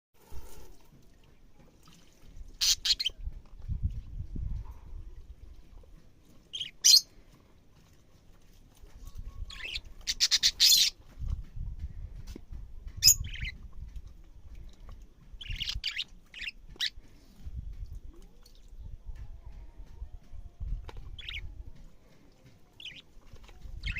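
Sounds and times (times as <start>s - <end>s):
budgerigar chirping and squawking: 2.6s - 3.1s, 6.6s - 7.1s, 9.5s - 11.0s, 13.0s - 13.6s, 15.4s - 16.9s, 21.2s - 21.4s.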